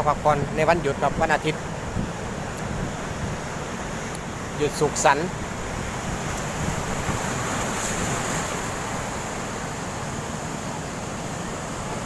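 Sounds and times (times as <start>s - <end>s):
wind buffeting microphone: 0.0s - 4.6s, 5.3s - 9.6s
sea surf rushing: 0.0s - 12.0s.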